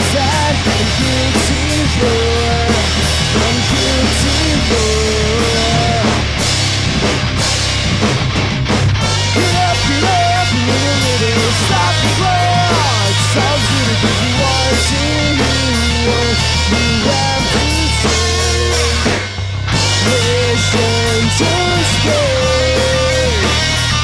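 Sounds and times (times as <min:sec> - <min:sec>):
loud rock music: 0:00.0 - 0:24.0.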